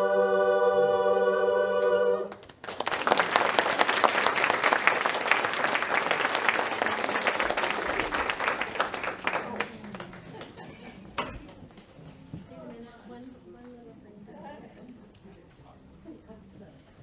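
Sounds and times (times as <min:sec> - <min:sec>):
women's a cappella chorus chord: 0:00.0 - 0:02.5
audience applause: 0:02.3 - 0:11.0.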